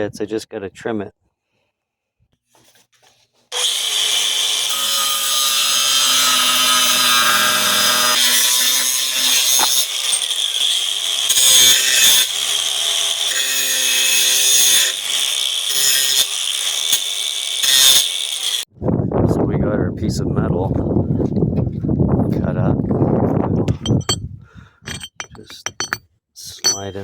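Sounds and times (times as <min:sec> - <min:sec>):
power tool cutting steel: 0:03.5 - 0:18.7.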